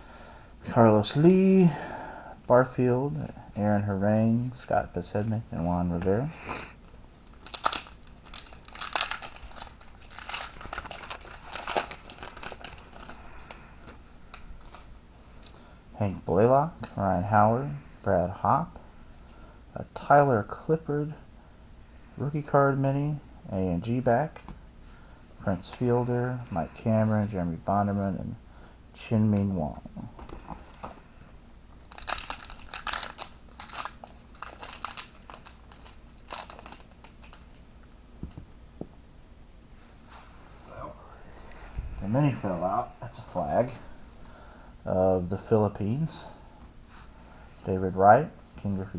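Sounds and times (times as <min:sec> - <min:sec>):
wrapper crinkling: 0:07.3 - 0:14.9, 0:31.8 - 0:37.6.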